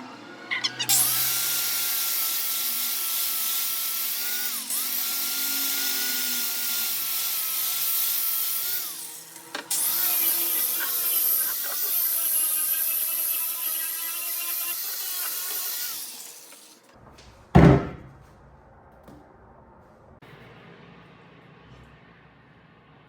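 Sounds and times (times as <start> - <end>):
wire brush grinder scraping steel: 0.5 - 17.0.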